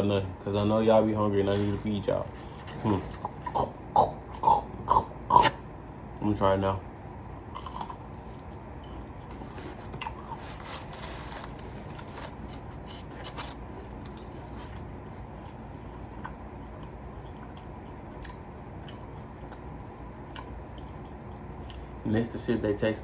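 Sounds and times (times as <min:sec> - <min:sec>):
low background hum: 0:00.0 - 0:23.0
person chewing fried chicken: 0:07.5 - 0:22.0.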